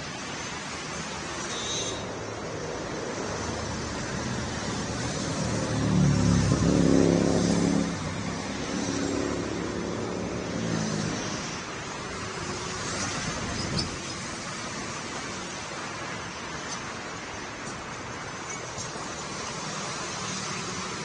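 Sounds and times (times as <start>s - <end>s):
steady traffic rush: 0.0s - 21.0s
vehicle engine passing: 5.0s - 11.5s.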